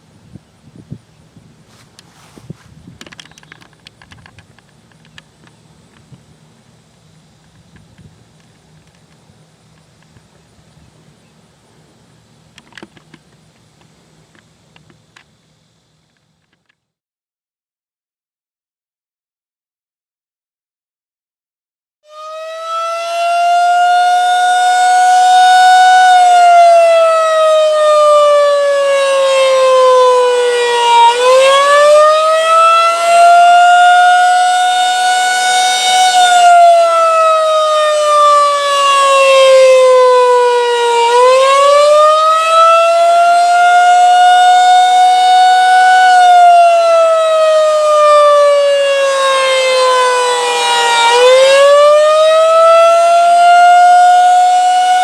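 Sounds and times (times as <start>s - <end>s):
warning siren wailing: 22.0s - 55.0s.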